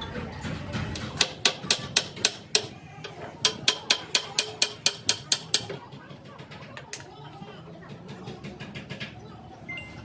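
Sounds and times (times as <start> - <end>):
hammer striking metal: 1.0 - 2.8, 3.4 - 5.8.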